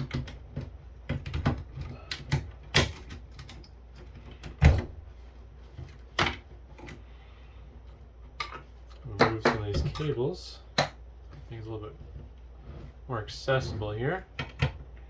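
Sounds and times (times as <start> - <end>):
clicks and knocks of handled parts: 0.0 - 4.9, 14.3 - 15.0.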